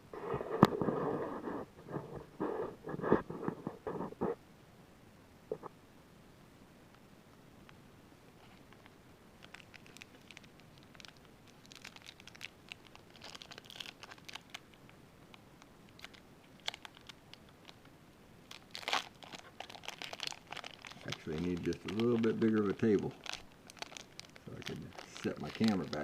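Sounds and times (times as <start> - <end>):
card wrapper crinkling: 9.4 - 14.8, 16.0 - 17.8, 18.5 - 26.0.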